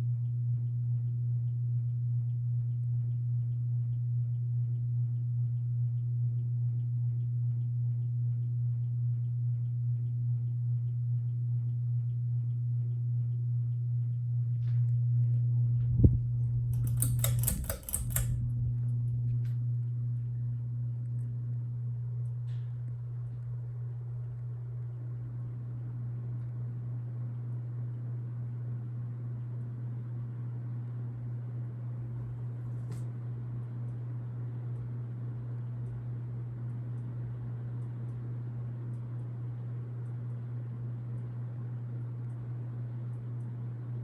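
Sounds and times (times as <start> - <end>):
ceiling fan motor humming: 11.0 - 44.0
sharp click: 16.7 - 18.4
rattling clicks: 16.7 - 18.5.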